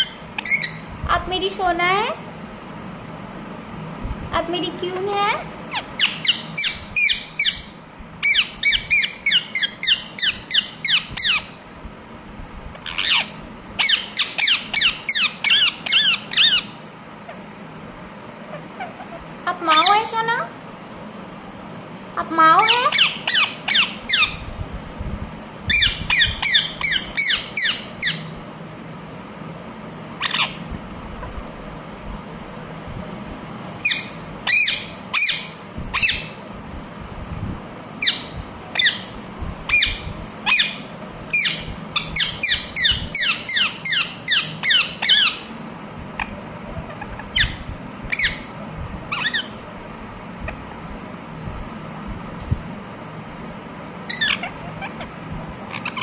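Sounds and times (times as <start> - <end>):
parakeet squawking: 0.0 - 0.9, 5.7 - 11.6, 12.8 - 17.4, 18.5 - 20.2, 22.4 - 24.5, 25.7 - 28.4, 30.2 - 30.7, 33.8 - 36.4, 38.0 - 45.5, 46.2 - 49.6, 54.1 - 56.0.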